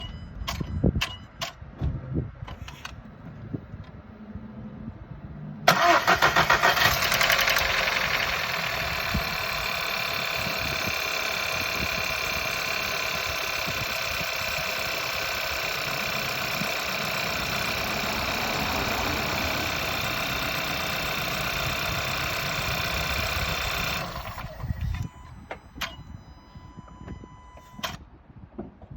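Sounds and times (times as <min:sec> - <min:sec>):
car engine starting and idling: 0:05.4 - 0:28.0
engine rattling clatter: 0:05.7 - 0:25.1.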